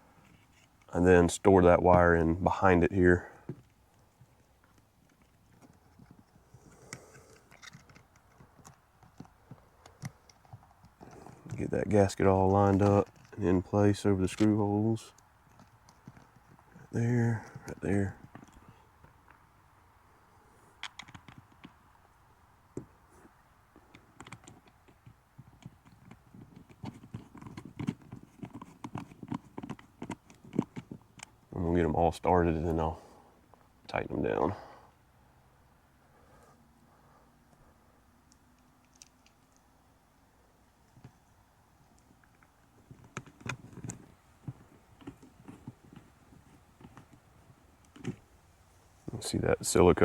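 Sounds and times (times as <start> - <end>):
clicks and knocks of handling parts: 3.4 - 11.6, 14.3 - 19.4, 20.7 - 22.0, 22.7 - 31.5, 38.2 - 39.8
small plastic clicks and knocks: 23.8 - 31.5, 38.2 - 39.7.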